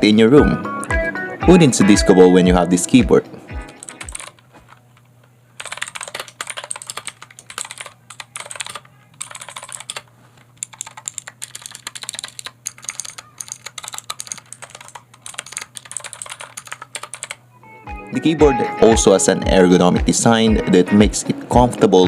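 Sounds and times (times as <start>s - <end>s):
mechanical keyboard typing: 3.6s - 4.8s, 5.6s - 17.4s.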